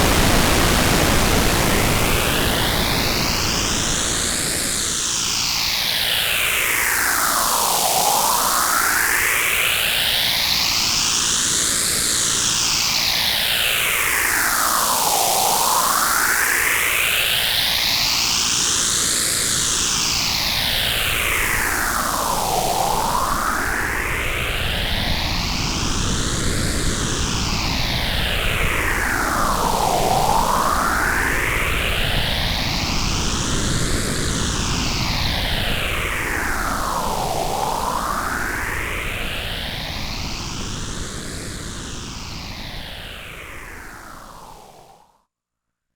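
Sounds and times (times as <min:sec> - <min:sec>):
phased white noise sweep: 0:00.0 - 0:05.6.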